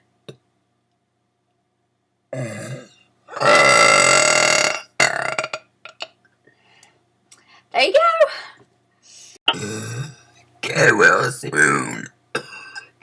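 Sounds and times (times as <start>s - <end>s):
long loud belch: 2.3s - 6.1s, 9.5s - 10.2s, 12.4s - 12.9s.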